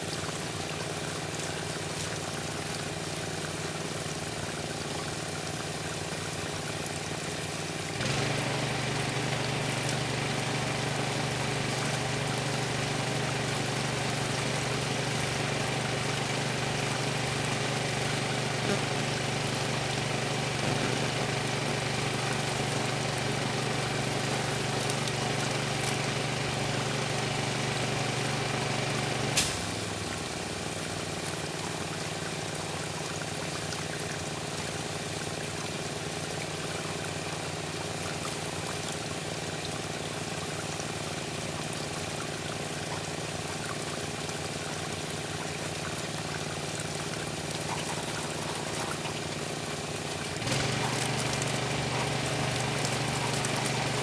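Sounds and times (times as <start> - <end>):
pressure washer engine humming: 7.6 - 31.0, 46.1 - 54.0
water spraying hiss: 8.0 - 30.4, 47.5 - 54.0.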